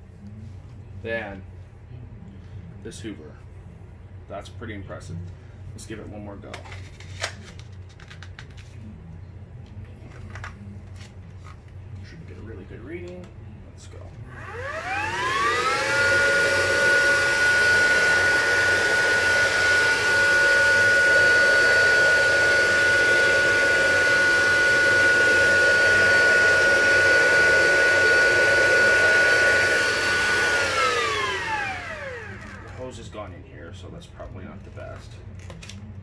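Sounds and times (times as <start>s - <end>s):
cordless vacuum motor whining: 14.3s - 32.9s.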